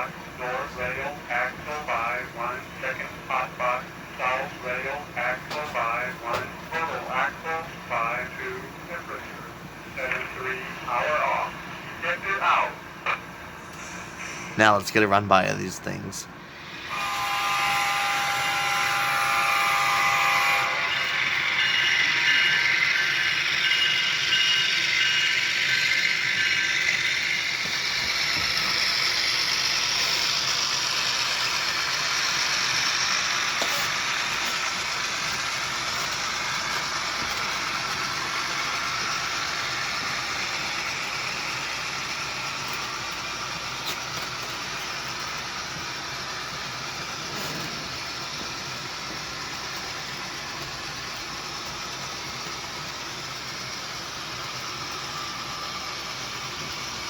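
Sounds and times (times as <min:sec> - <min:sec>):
model train motor noise: 0:00.0 - 0:14.6, 0:16.5 - 0:57.0
diesel engine sound effect: 0:00.0 - 0:17.0, 0:20.4 - 0:57.0
model train wheels clicking: 0:16.7 - 0:57.0.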